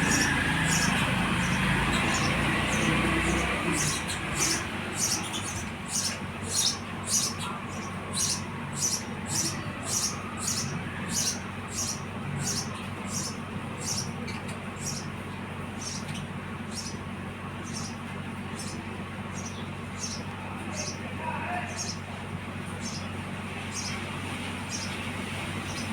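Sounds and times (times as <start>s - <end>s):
sparrows chirping: 0.0s - 25.9s.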